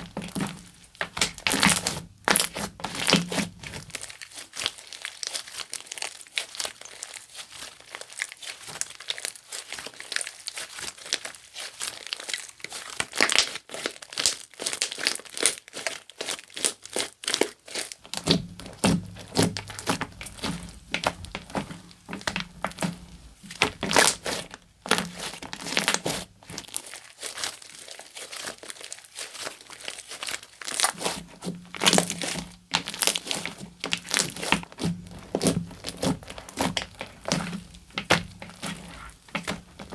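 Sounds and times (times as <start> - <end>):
slime squishing and popping: 0.0 - 7.0, 18.0 - 39.9.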